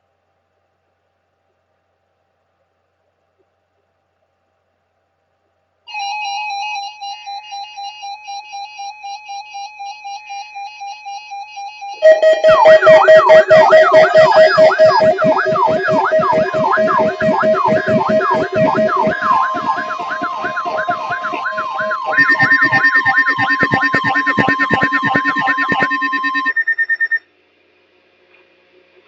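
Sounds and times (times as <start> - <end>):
electronic sirens wailing: 12.0 - 27.2
steady alarm tones: 12.0 - 27.2
steady high tone: 12.0 - 27.2.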